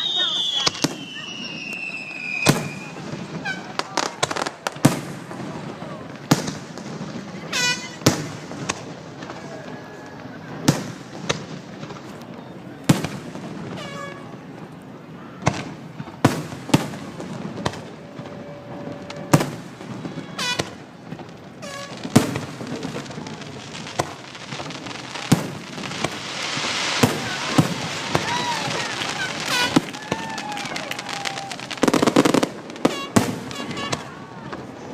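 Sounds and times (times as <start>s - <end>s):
fireworks crackling hiss: 0.0s - 34.9s
fireworks shells bursting: 15.5s - 34.1s.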